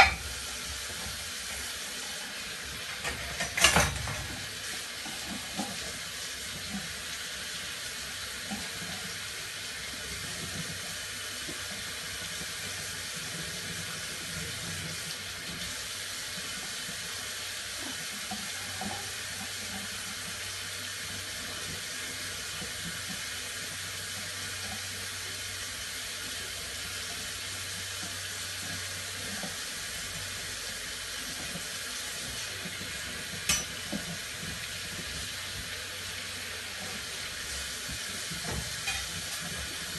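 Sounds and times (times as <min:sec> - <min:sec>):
dishes clinking: 0:00.0 - 0:00.3, 0:02.8 - 0:04.3, 0:33.4 - 0:34.1, 0:38.5 - 0:39.2
tap water running into sink: 0:00.0 - 0:39.9.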